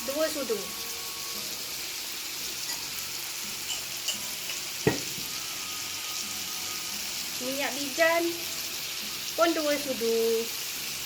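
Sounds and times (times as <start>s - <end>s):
food sizzling in a pan: 0.0s - 11.0s
sharp knock: 4.9s - 5.2s.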